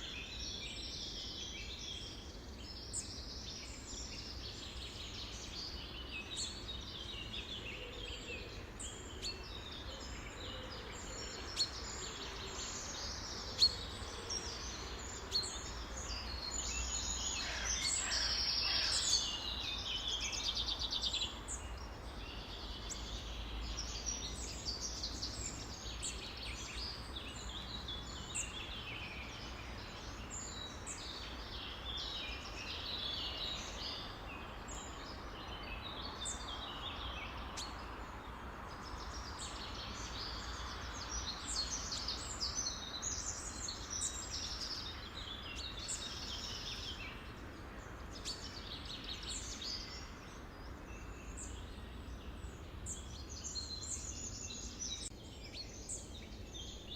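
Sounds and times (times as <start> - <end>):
birds chirping and singing: 0.0 - 56.9.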